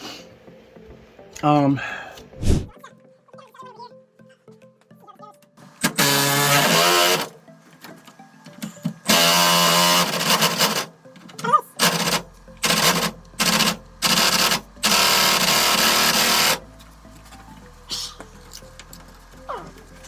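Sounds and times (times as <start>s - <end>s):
power wrench bursts: 5.8s - 7.4s, 9.1s - 10.9s, 11.8s - 16.6s.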